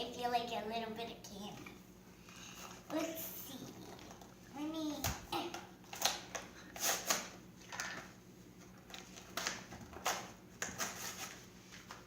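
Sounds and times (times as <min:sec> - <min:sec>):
packaging crinkling and rustling: 0:05.9 - 0:12.0.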